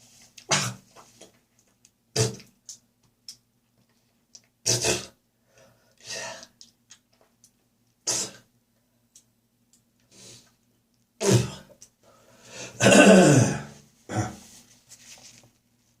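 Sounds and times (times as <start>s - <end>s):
person coughing: 11.2s - 11.7s, 12.8s - 14.4s.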